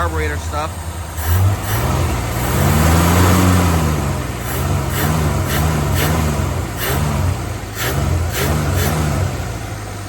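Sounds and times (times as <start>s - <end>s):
car engine revving: 1.0s - 10.0s.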